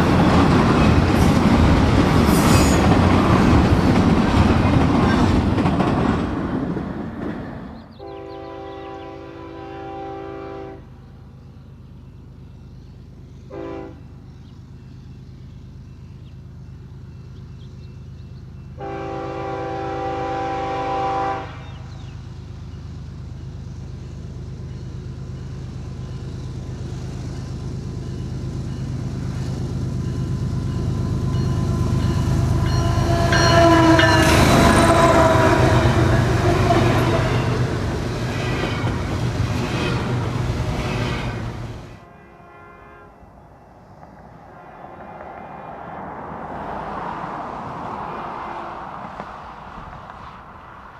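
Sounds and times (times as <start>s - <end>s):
train rumble: 0.0s - 50.9s
locomotive air horn blasts: 8.0s - 10.9s, 13.5s - 14.0s, 18.8s - 21.9s, 31.0s - 37.8s, 42.0s - 43.3s.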